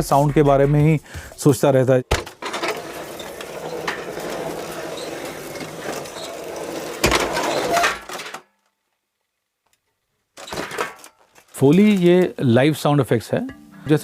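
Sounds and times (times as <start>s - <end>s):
objects clattering and clinking: 2.1s - 8.5s, 10.4s - 12.3s.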